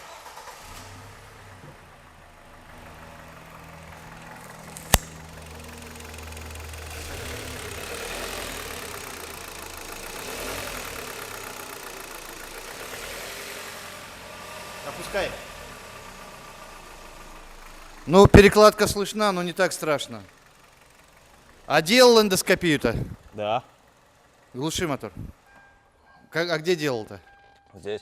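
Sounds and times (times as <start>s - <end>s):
car engine running: 0.1s - 25.7s
engine knock: 2.5s - 13.2s, 15.6s - 25.2s
sharp click: 4.7s - 5.2s.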